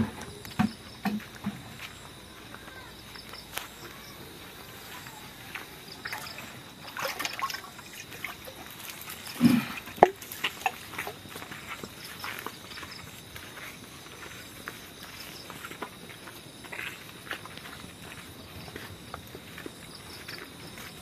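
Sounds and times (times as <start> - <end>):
water trickling: 5.6 - 12.9.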